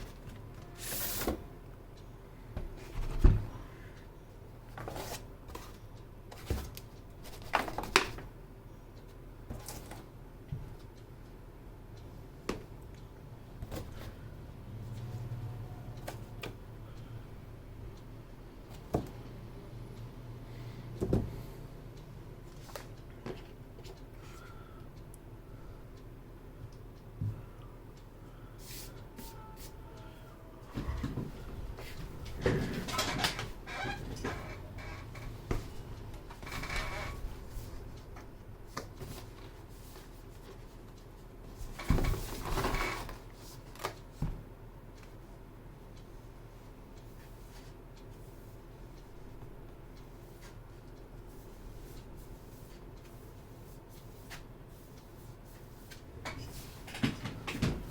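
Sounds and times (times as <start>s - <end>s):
steady low hum: 0.0s - 57.9s.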